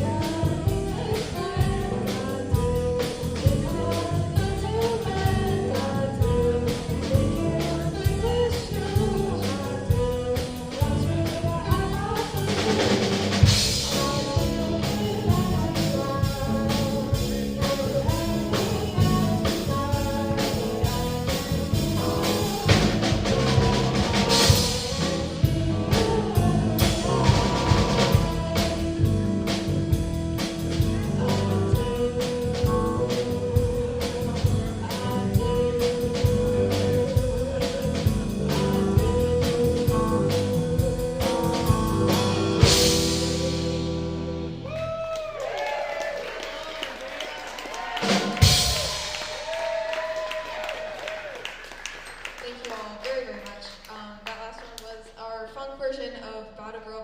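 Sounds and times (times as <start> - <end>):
live rock band playing: 0.0 - 45.0, 47.8 - 49.7
person singing: 0.0 - 45.1.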